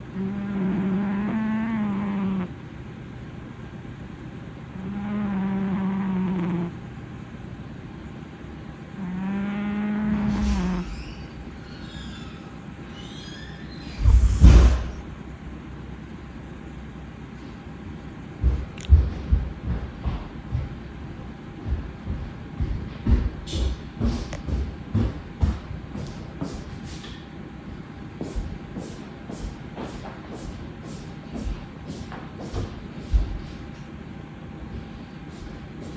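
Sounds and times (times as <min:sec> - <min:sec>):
cat snoring: 0:00.1 - 0:02.6, 0:04.8 - 0:06.8, 0:09.0 - 0:11.1
low thump: 0:14.0 - 0:15.0.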